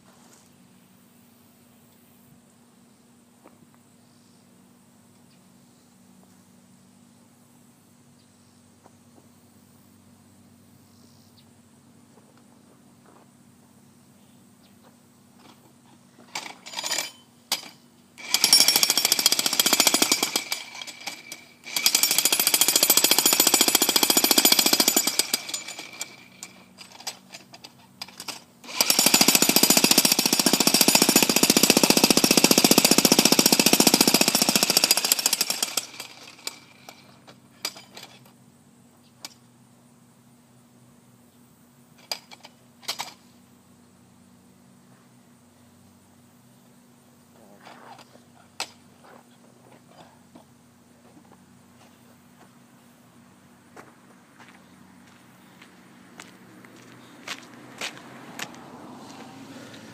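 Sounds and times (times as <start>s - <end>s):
jackhammer hammering: 16.3s - 27.2s, 28.0s - 38.2s.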